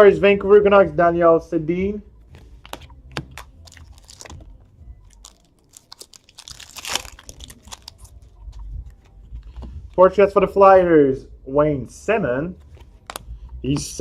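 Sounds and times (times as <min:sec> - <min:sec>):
cards clicking and scraping: 0:02.3 - 0:04.5, 0:05.2 - 0:10.0, 0:12.5 - 0:14.0
wrapper crinkling: 0:02.6 - 0:09.6.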